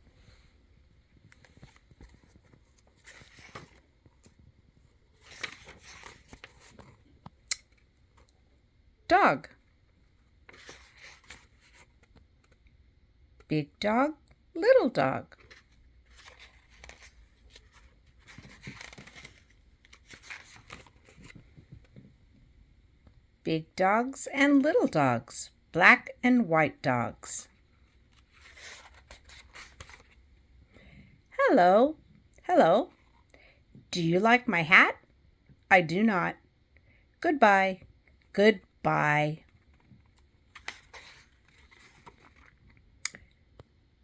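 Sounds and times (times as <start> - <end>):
book pages rustling: 0.0 - 8.4, 9.8 - 12.8, 15.4 - 22.3, 27.5 - 30.7, 39.4 - 43.8.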